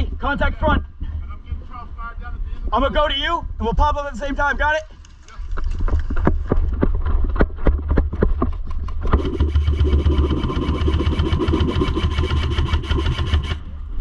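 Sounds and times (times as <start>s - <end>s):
airsoft rifle automatic fire: 9.0s - 13.7s
buzzing motor: 9.1s - 13.7s.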